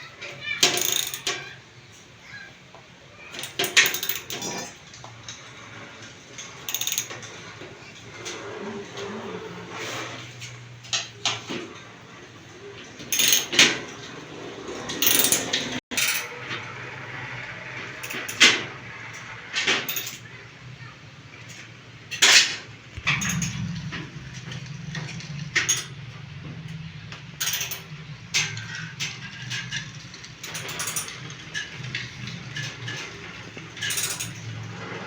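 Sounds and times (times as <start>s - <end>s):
ratchet clicking: 6.7s - 7.1s
knocks and clatter: 22.1s - 35.0s.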